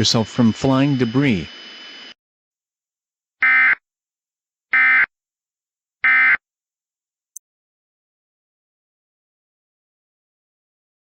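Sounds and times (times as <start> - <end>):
digital data tone bursts: 0.0 - 2.1.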